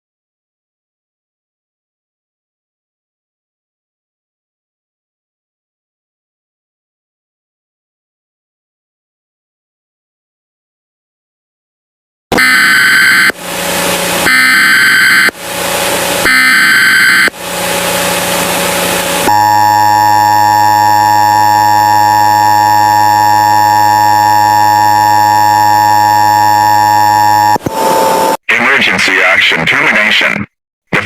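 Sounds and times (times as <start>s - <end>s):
two-tone attention signal: 12.4s - 13.3s, 14.3s - 15.3s, 16.2s - 17.3s, 19.3s - 28.4s
screeching data tone bursts: 12.4s - 13.4s, 14.2s - 15.3s, 16.2s - 17.3s, 19.3s - 28.4s.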